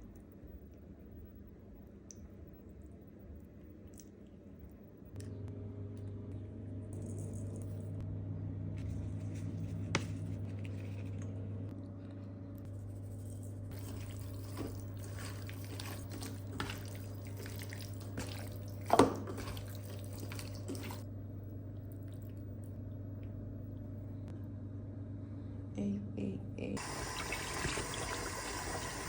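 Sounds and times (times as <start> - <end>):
steady low hum: 0.0 - 29.0
water splashing and dripping: 15.3 - 21.0, 26.8 - 29.0.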